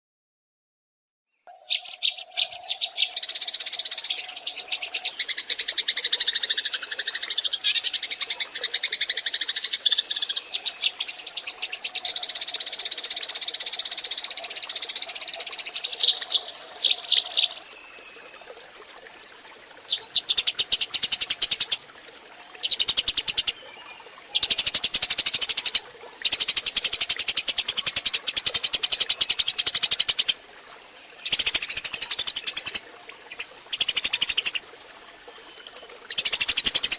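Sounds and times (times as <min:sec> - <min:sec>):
sparrows chirping chatter: 0:01.6 - 0:13.0, 0:22.6 - 0:30.4.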